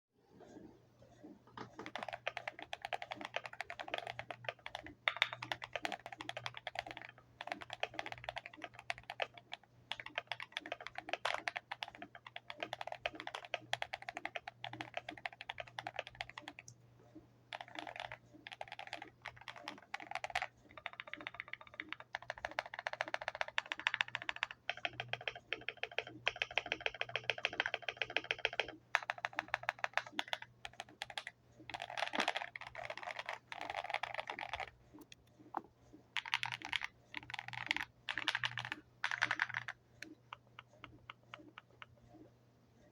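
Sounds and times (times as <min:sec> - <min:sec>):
mechanical keyboard typing: 0:01.6 - 0:16.8, 0:17.5 - 0:35.3, 0:36.2 - 0:42.0.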